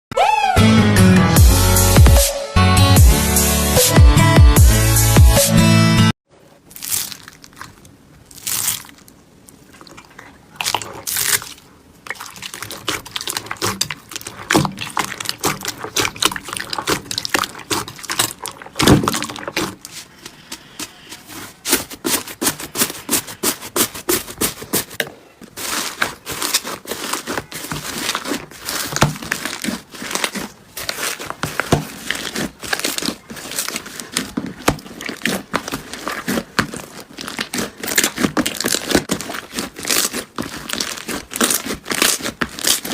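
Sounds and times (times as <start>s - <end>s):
slime crackling and popping: 6.6s - 20.0s, 23.9s - 42.9s.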